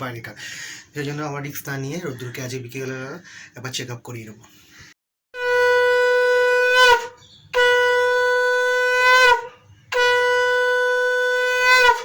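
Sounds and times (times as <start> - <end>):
conch shell blasts: 5.4 - 12.0.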